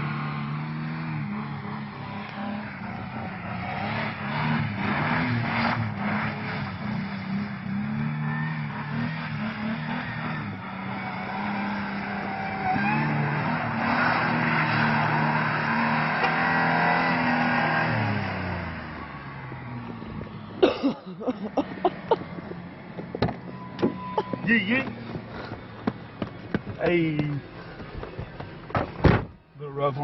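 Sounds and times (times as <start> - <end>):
truck engine revving: 0.0 - 29.4
sharp knocks: 24.9 - 29.4.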